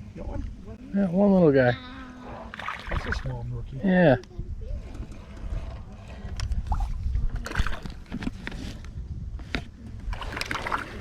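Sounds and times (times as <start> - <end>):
water lapping around boat: 1.9 - 8.8, 9.9 - 11.0.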